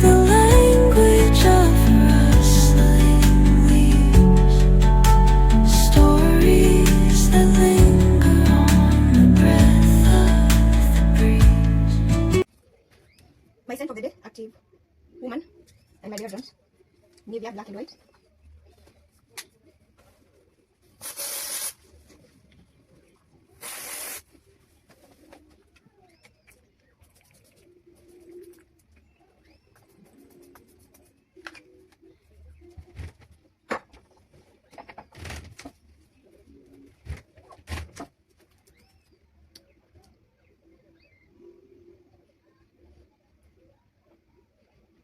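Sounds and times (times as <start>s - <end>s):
spray bottle hissing: 21.0s - 21.8s, 23.6s - 24.2s.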